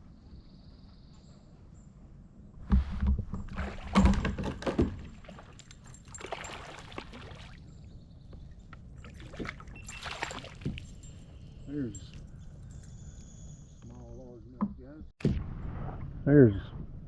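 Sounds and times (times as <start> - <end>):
knocks and thumps against boat: 2.6 - 7.1
water splashing: 3.4 - 7.9, 8.8 - 11.0.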